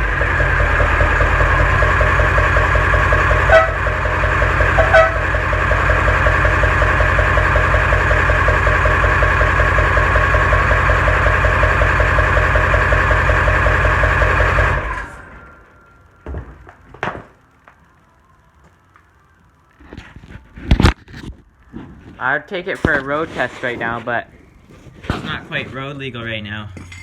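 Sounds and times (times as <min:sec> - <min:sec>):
diesel engine idling: 0:00.0 - 0:19.8.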